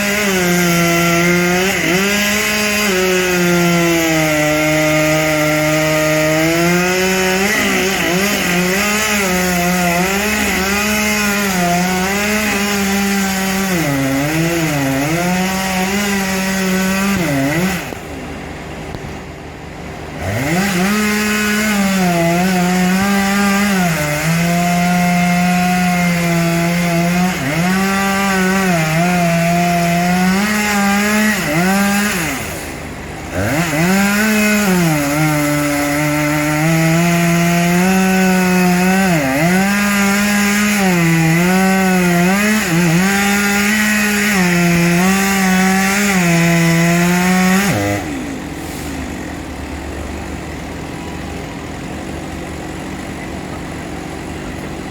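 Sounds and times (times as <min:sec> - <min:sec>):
chainsaw cutting wood: 0:00.0 - 0:54.9.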